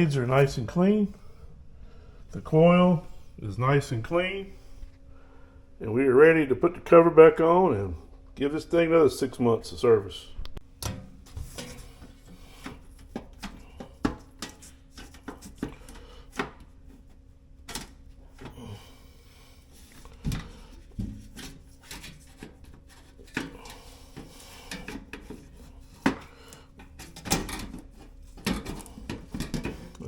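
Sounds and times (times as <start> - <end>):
faint steady hum: 0.0 - 30.0.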